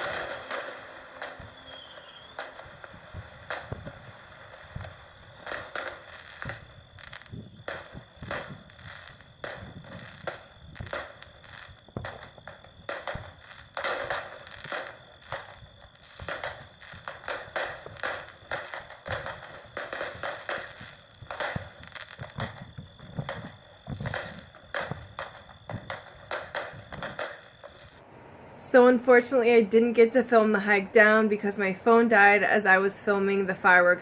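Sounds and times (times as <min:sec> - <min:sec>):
fireworks popping and cracking: 0:00.0 - 0:28.0
wind on microphone: 0:02.5 - 0:05.7, 0:06.4 - 0:12.5, 0:19.0 - 0:27.2.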